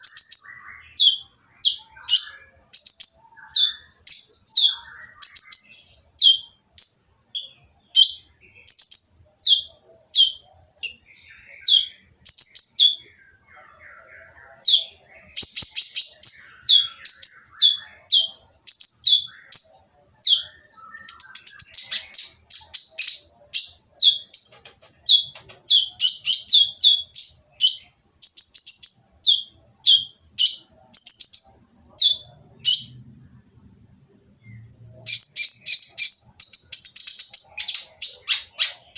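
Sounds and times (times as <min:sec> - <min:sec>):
sunbird calling harshly: 0:14.6 - 0:32.9, 0:35.0 - 0:38.9.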